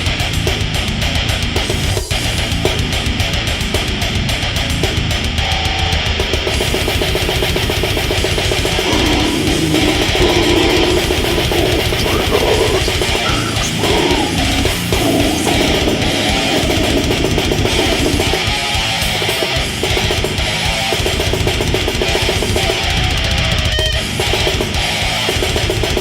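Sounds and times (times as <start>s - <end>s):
distorted metal guitars: 0.0s - 26.0s.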